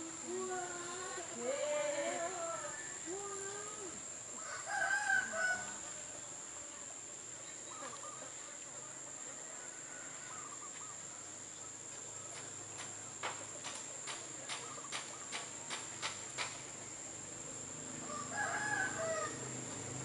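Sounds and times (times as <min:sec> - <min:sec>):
rooster crowing: 0:04.4 - 0:05.9, 0:09.4 - 0:10.6, 0:18.0 - 0:19.8.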